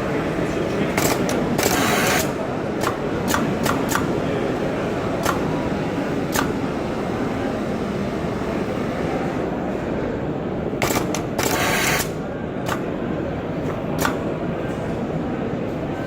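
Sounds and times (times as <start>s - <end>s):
machine humming: 0.1s - 14.6s.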